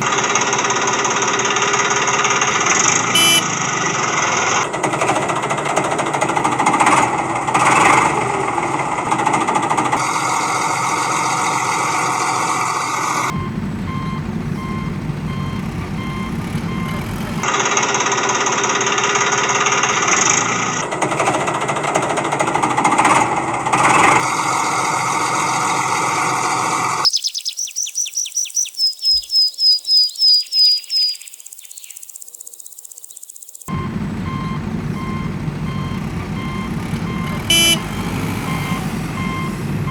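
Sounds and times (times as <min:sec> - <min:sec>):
machine engine running: 0:00.0 - 0:27.0, 0:33.7 - 0:39.9
high-pitched chirps: 0:27.0 - 0:33.6.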